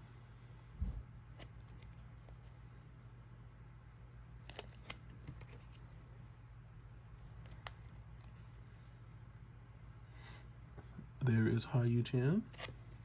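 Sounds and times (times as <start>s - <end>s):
low electrical hum: 0.0s - 13.0s.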